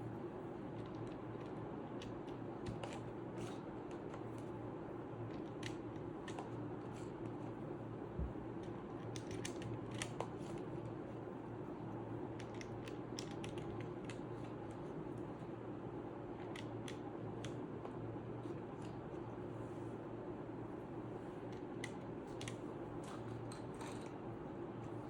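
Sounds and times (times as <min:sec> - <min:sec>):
steady low hum: 0:00.0 - 0:25.0
keycaps clicking onto keyboard: 0:08.6 - 0:10.4, 0:12.3 - 0:14.3.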